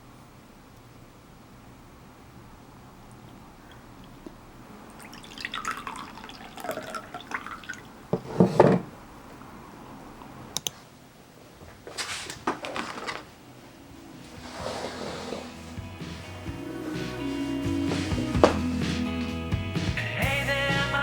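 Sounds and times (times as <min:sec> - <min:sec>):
liquid pouring and dripping: 0:03.6 - 0:08.0.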